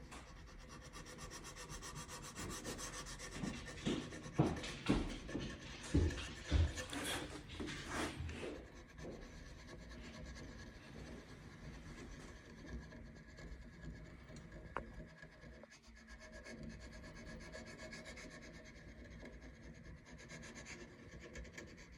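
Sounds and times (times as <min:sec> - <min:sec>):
hand tool scraping wood: 0:00.0 - 0:10.5.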